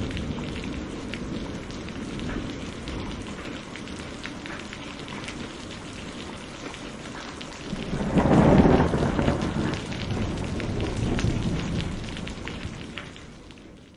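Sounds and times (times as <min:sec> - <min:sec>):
raindrops hitting a surface: 0:00.0 - 0:13.9
steady rain: 0:00.0 - 0:13.9
thunder rumbling: 0:07.5 - 0:13.5.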